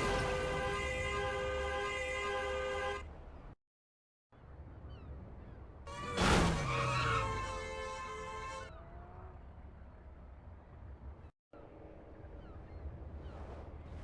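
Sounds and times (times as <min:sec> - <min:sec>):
car horn blaring: 0:00.0 - 0:03.1, 0:05.9 - 0:08.7.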